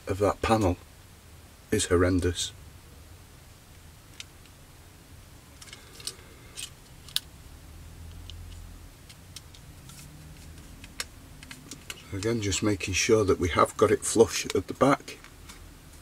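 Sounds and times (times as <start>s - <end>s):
plastic parts clicking: 5.6s - 7.3s.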